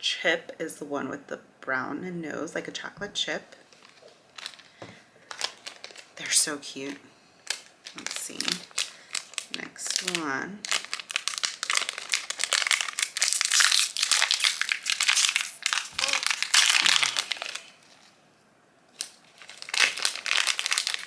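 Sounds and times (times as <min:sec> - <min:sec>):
packaging crinkling: 0:03.7 - 0:18.2, 0:18.9 - 0:21.0.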